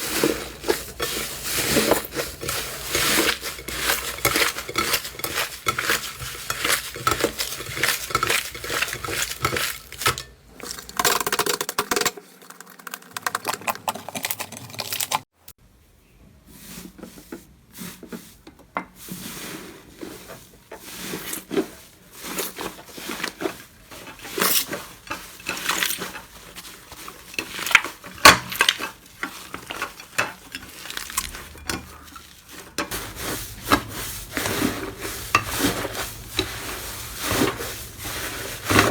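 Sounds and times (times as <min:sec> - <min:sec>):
slime squishing and crackling: 0:00.0 - 0:11.8, 0:12.4 - 0:15.3, 0:24.2 - 0:35.0.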